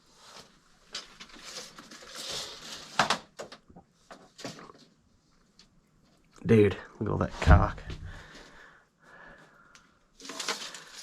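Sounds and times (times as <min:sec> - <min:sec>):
rustling: 0:00.0 - 0:03.2, 0:10.2 - 0:11.0.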